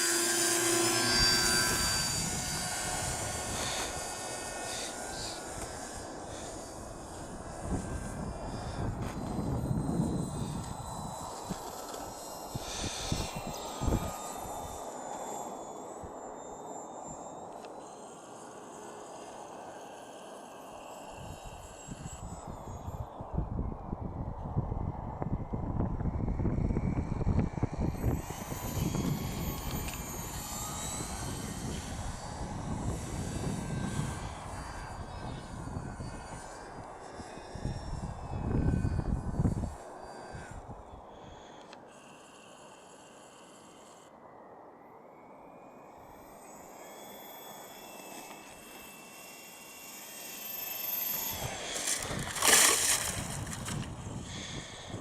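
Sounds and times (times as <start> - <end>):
wind rumble on microphone: 0.0 - 16.3, 20.7 - 41.4, 50.5 - 55.0
model plane motors droning: 0.0 - 55.0.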